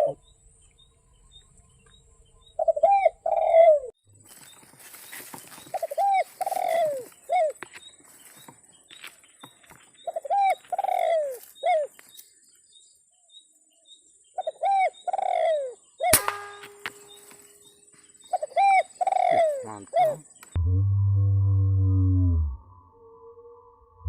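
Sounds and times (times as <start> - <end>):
dove cooing: 0.0 - 0.2, 2.6 - 3.9, 5.7 - 7.6, 10.1 - 11.9, 14.4 - 15.8, 18.3 - 20.4.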